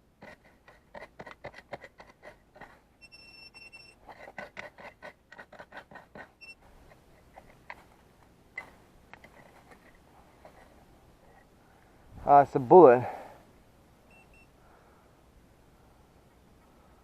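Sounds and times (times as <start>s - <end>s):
digging tool scraping soil: 0.0s - 10.8s
short electronic beep: 14.1s - 14.5s.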